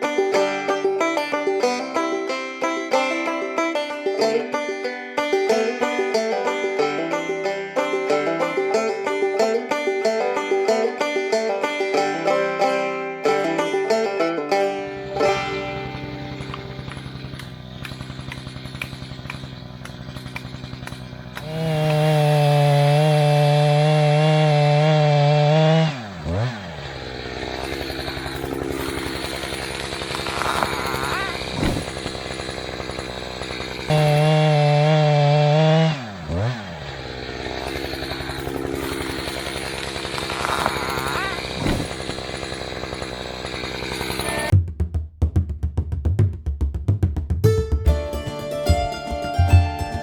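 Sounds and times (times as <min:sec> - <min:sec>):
chainsaw revving: 0:14.7 - 0:44.6, 0:47.9 - 0:50.0.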